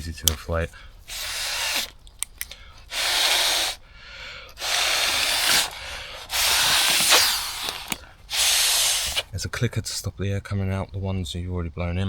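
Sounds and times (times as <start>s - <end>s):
breaths blown into pillow valve: 0.8s - 9.5s.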